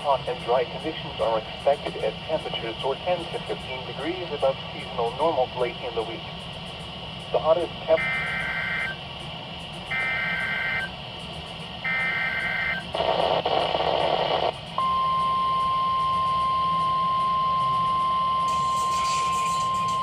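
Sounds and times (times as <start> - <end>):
two-tone digital data bursts: 8.0 - 9.0, 9.9 - 10.9, 11.9 - 20.0
noise burst: 11.7 - 20.0.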